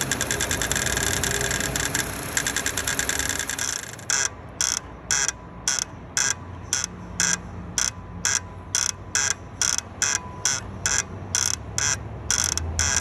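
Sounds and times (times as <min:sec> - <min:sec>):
engine grinding scrape: 0:00.0 - 0:04.1.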